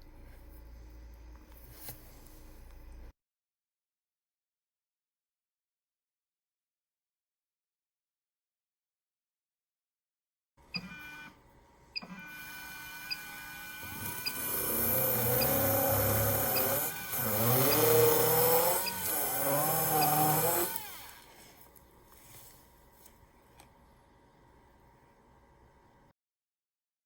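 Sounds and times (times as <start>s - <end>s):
dental drill whining: 10.8s - 11.4s, 12.0s - 21.6s.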